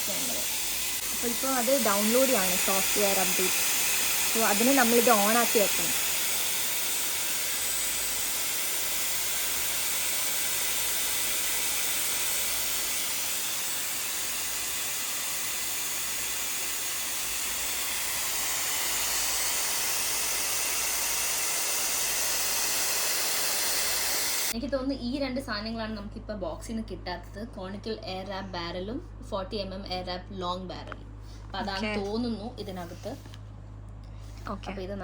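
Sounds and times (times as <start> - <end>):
hair styler blowing air: 0.0 - 24.6.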